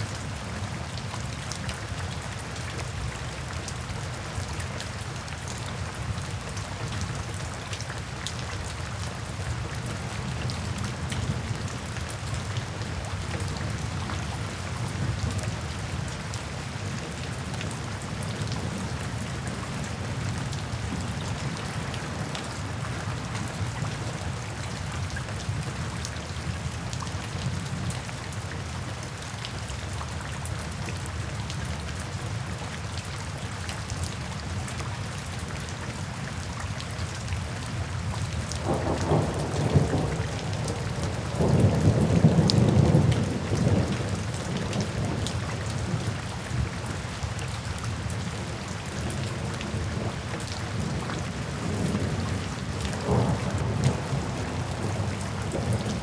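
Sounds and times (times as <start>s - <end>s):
steady rain: 0.0s - 56.0s
thunder rumbling: 53.0s - 56.0s.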